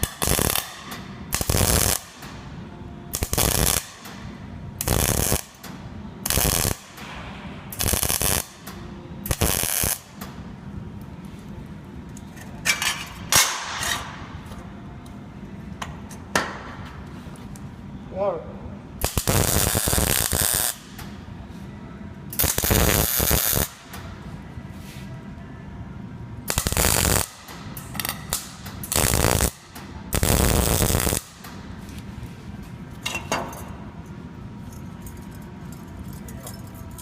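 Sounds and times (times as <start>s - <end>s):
welding arc crackling: 0.0s - 2.4s, 3.1s - 7.0s, 7.7s - 10.3s, 19.0s - 21.0s, 22.3s - 23.8s, 26.5s - 31.5s
steady low hum: 0.0s - 37.0s.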